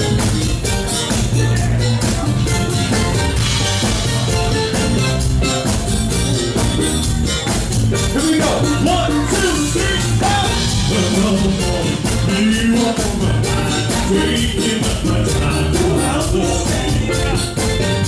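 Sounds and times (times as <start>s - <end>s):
bass guitar: 0.0s - 18.0s
drums: 0.0s - 18.0s
person singing: 8.1s - 18.0s.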